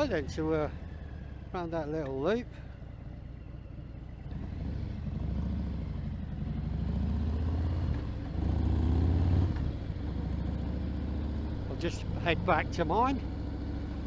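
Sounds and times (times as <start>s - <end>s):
motorcycle engine revving: 4.2s - 14.0s.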